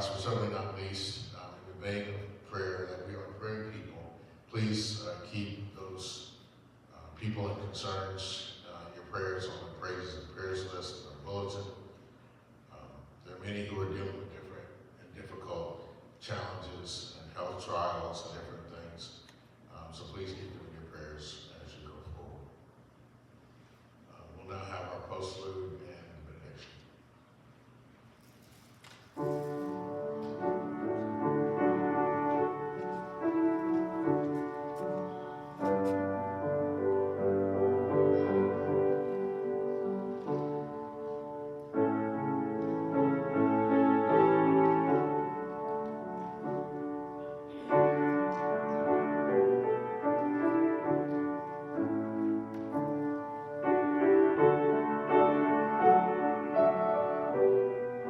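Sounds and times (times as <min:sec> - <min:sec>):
slow keyboard chords: 0:29.2 - 0:58.0.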